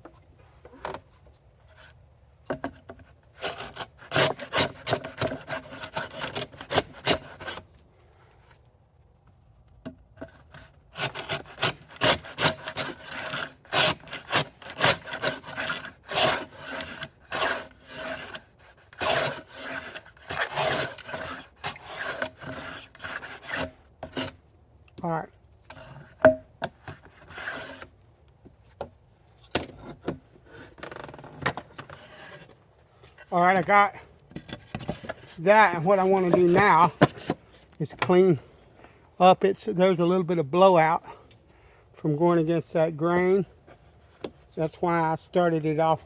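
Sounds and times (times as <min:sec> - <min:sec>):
hand saw cutting wood: 0:02.5 - 0:07.7, 0:10.2 - 0:24.4, 0:25.7 - 0:28.0, 0:31.6 - 0:37.4.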